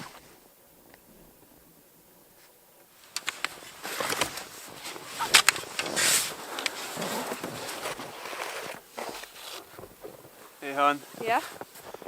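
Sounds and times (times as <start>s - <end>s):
crunching and scraping in snow: 2.4s - 12.0s.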